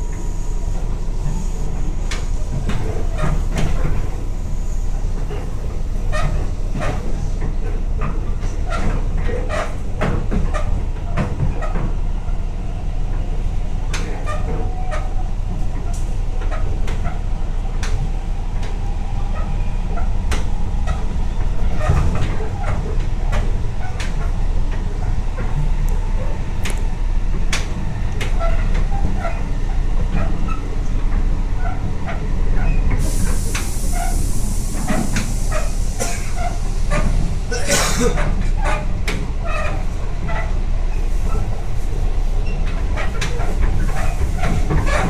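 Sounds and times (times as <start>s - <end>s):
train running gear rumble: 0.0s - 45.0s
high hiss: 33.0s - 37.4s.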